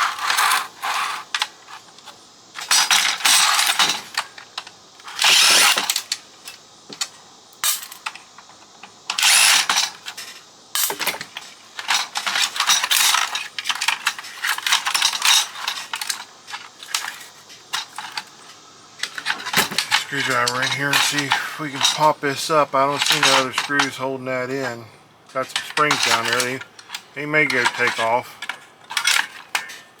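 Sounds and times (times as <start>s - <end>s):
hand tools scraping and rattling: 0.0s - 30.0s.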